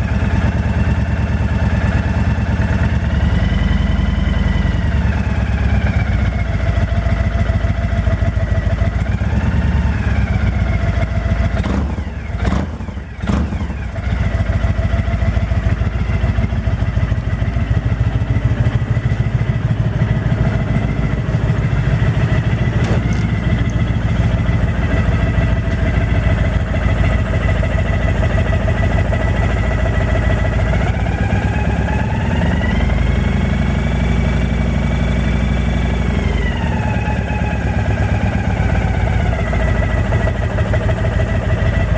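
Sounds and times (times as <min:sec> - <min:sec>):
motorcycle engine running: 0:00.0 - 0:41.9
high whistling engine whine: 0:14.6 - 0:41.9.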